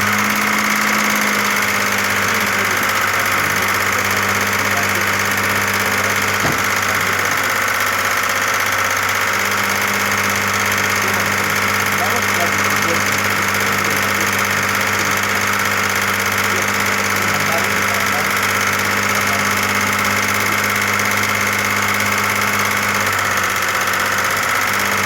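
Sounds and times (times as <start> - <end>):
car engine idling: 0.0 - 25.0
valve lifters tapping: 0.0 - 25.0.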